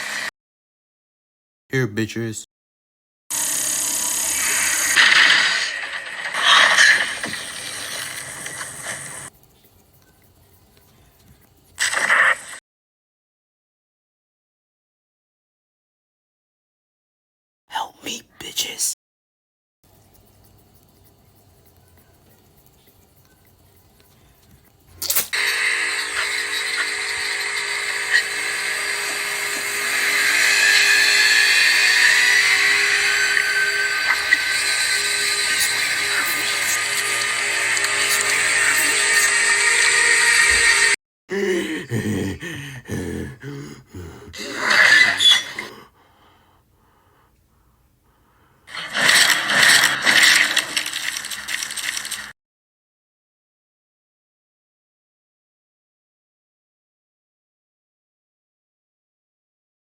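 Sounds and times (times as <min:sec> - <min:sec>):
chainsaw buzzing: 0:25.3 - 0:41.0.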